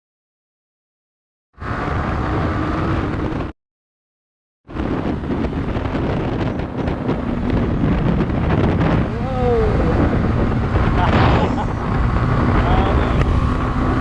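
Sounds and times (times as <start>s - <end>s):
wind noise on microphone: 1.6s - 3.5s, 4.7s - 14.0s.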